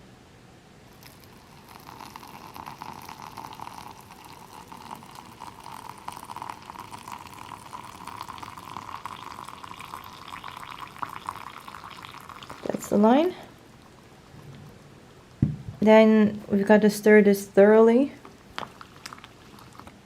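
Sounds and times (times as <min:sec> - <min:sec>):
water pouring into a pot: 0:00.9 - 0:13.0.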